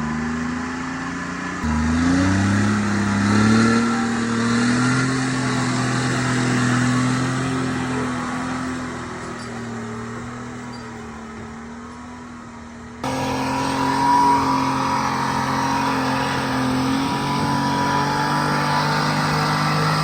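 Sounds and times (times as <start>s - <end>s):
diesel engine running: 0.0s - 20.0s
high whine: 13.0s - 20.0s.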